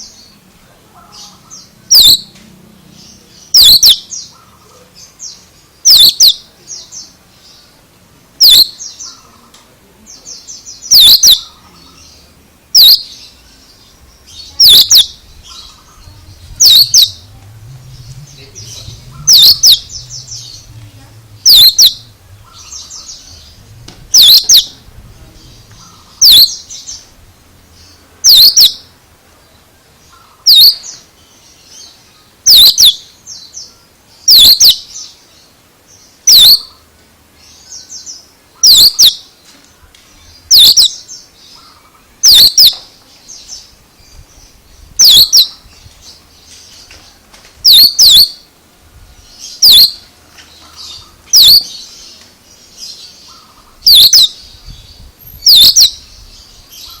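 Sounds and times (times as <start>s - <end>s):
soft bird twittering: 1.0s - 2.3s, 2.9s - 7.8s, 8.4s - 28.9s, 29.5s - 48.5s, 49.2s - 57.0s
bird giving sharp call: 1.1s - 2.3s, 3.5s - 4.6s, 5.9s - 6.4s, 8.4s - 9.4s, 10.9s - 12.0s, 12.7s - 13.1s, 14.6s - 20.8s, 21.4s - 24.8s, 25.7s - 26.7s, 28.2s - 28.8s, 30.1s - 30.9s, 32.5s - 33.0s, 34.3s - 34.8s, 36.3s - 36.8s, 38.6s - 39.2s, 40.5s - 41.0s, 41.6s - 42.8s, 45.0s - 45.6s, 47.6s - 48.4s, 49.6s - 50.0s, 51.0s - 51.8s, 53.3s - 54.4s, 55.4s - 56.0s.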